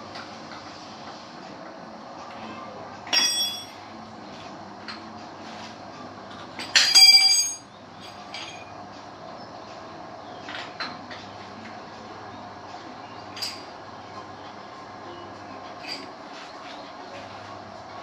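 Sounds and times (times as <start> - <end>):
metal tools clinking: 3.1 - 3.8, 6.6 - 8.7.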